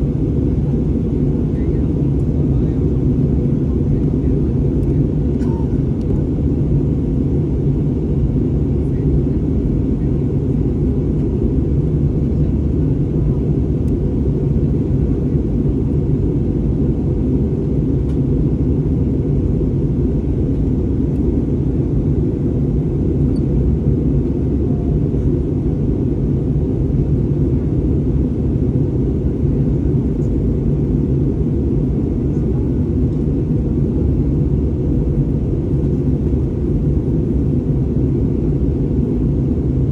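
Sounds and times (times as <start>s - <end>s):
airliner cabin engine drone: 0.0s - 39.9s.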